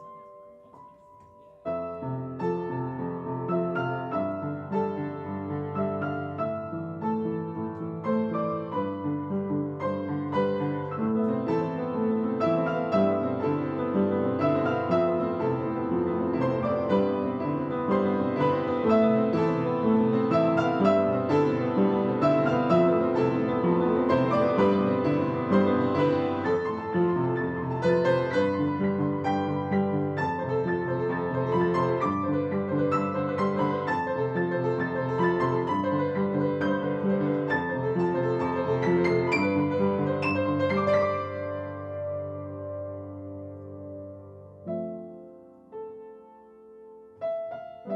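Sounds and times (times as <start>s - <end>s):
piano music: 0.0s - 47.9s.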